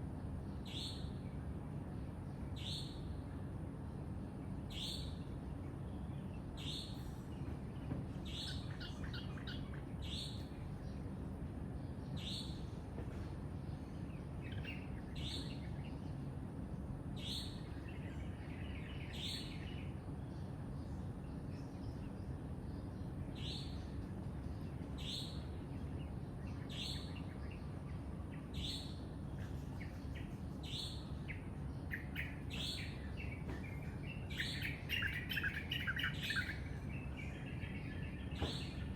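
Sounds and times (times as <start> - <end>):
birds calling with high notes: 17.2 - 38.9.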